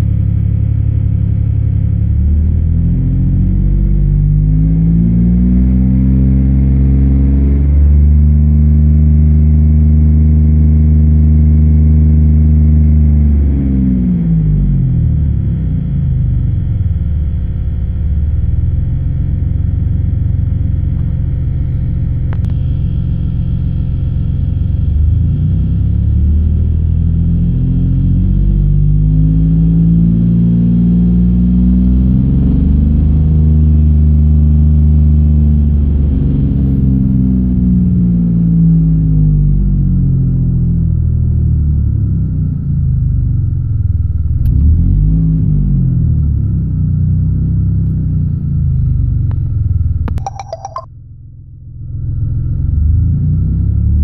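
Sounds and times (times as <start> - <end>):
car engine revving and misfiring: 44.3 - 49.3.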